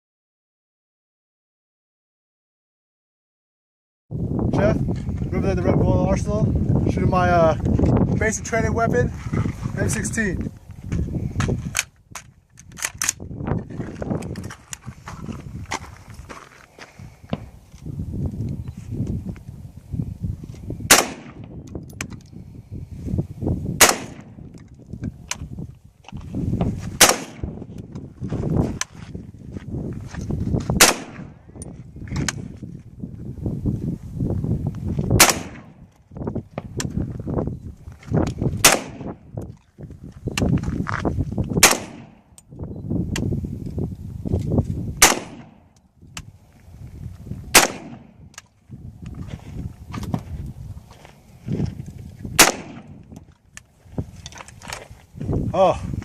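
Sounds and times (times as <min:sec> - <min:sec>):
rifle shots: 0:20.9 - 0:21.5, 0:23.8 - 0:24.3, 0:27.0 - 0:27.6, 0:30.8 - 0:31.4, 0:35.2 - 0:35.8, 0:38.6 - 0:39.2, 0:41.6 - 0:42.2, 0:45.0 - 0:45.7, 0:47.5 - 0:48.2, 0:52.4 - 0:53.0.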